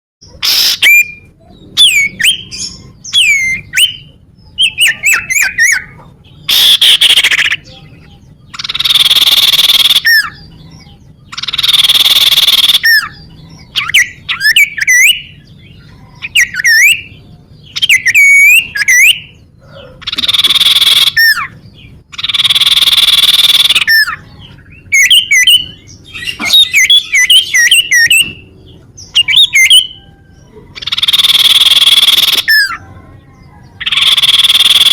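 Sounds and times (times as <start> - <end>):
bird whistled notes: 29.2 - 30.2, 30.8 - 32.8.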